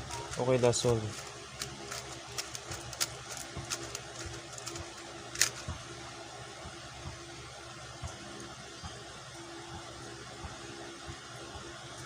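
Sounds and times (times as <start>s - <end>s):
puzzle cube plastic clicks: 0.1s - 5.7s.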